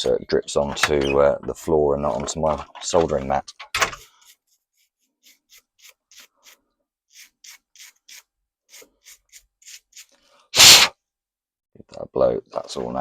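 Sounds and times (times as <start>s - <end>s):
quick rubbing strokes: 4.1s - 10.9s.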